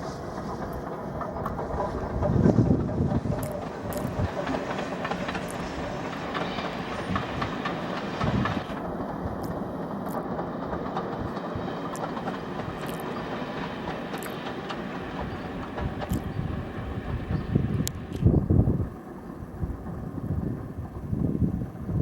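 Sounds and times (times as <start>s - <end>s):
steam hiss: 0.0s - 20.2s
train wheels clacking on rails: 0.0s - 22.0s.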